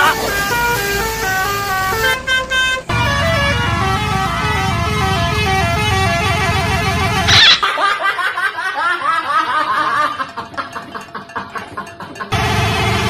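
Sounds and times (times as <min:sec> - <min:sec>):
bus horn playing a tune: 0:00.0 - 0:07.4, 0:12.4 - 0:13.0.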